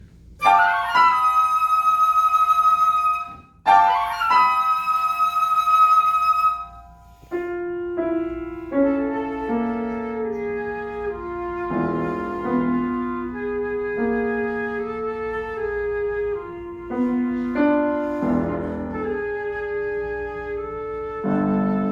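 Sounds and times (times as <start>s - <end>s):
flute playing held notes: 0.4s - 21.9s.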